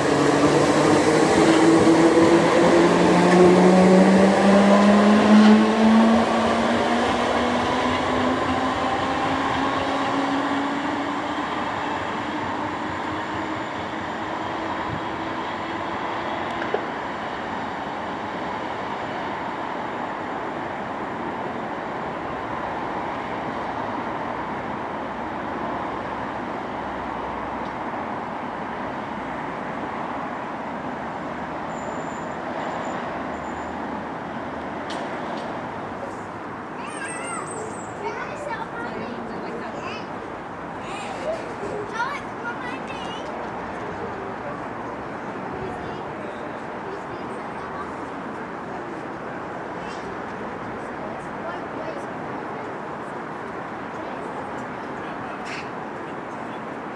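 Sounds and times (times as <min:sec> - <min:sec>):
train wheels rumbling on rails: 0:00.0 - 0:56.9.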